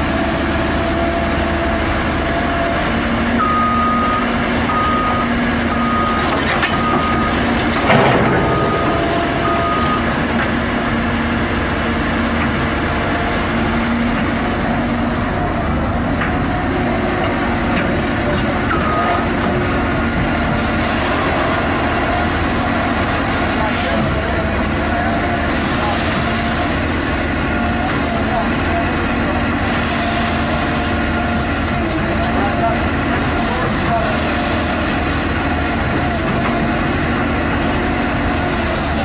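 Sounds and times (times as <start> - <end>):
heavy vehicle engine running: 0.0 - 39.0
reversing alarm beeps: 3.4 - 7.4, 8.3 - 10.2, 18.7 - 19.3.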